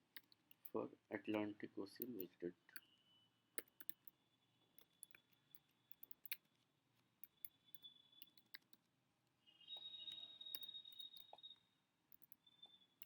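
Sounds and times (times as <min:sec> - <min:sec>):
faint keyboard clicks: 0:03.6 - 0:04.2.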